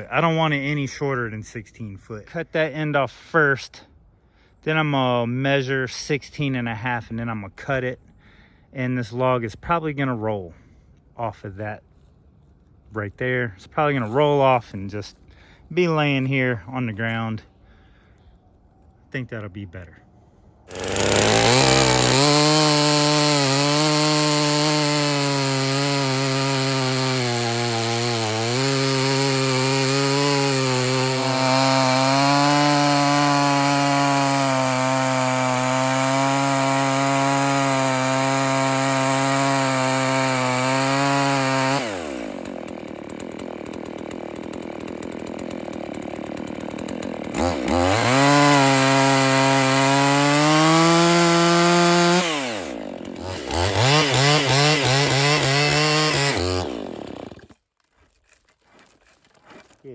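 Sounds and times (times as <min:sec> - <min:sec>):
chainsaw cutting log: 0:20.7 - 0:59.8.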